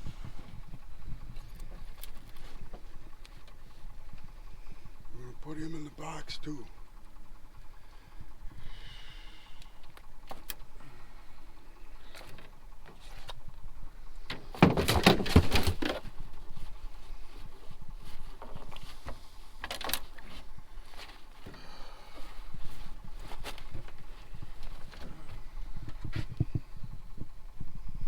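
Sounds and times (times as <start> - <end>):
fish thumping in a box: 14.3 - 16.2.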